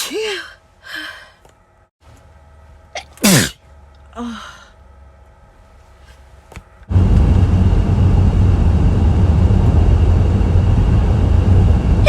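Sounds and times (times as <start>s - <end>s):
loud steady rumbling: 6.8s - 12.0s.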